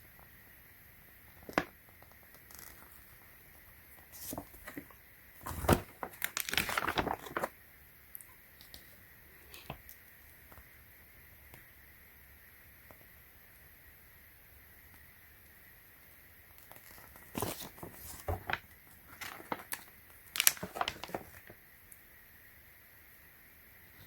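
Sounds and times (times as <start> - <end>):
packaging crinkling and rustling: 1.4 - 3.3, 4.0 - 7.6, 16.6 - 21.6.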